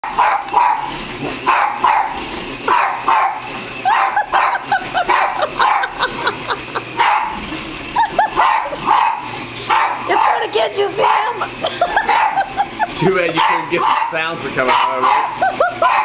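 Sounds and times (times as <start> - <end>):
dog barking: 0.2 - 6.0, 7.0 - 7.4, 8.4 - 11.4, 12.0 - 12.5, 13.3 - 16.0
dog yipping and whining: 2.8 - 6.0, 11.0 - 12.6, 14.7 - 16.0.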